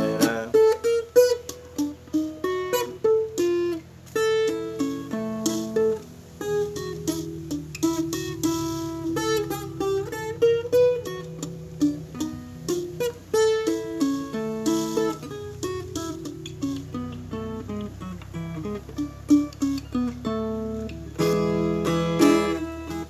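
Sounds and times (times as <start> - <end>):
person singing: 0.0 - 1.0
plucked guitar melody: 0.0 - 23.0.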